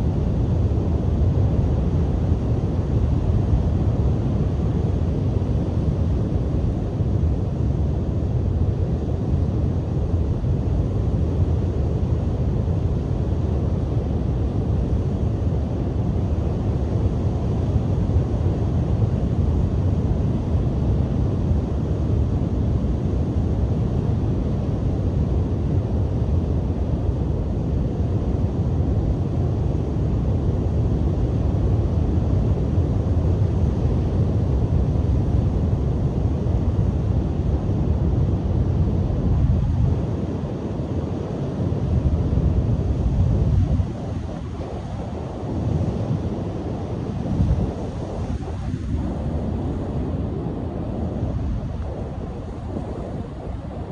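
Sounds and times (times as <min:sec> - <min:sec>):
wind buffeting microphone: 0:38.3 - 0:53.9.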